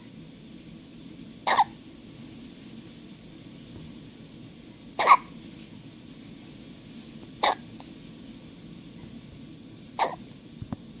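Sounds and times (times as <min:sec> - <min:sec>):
baby hiccuping: 0:01.5 - 0:01.7, 0:05.0 - 0:05.3, 0:10.0 - 0:10.2.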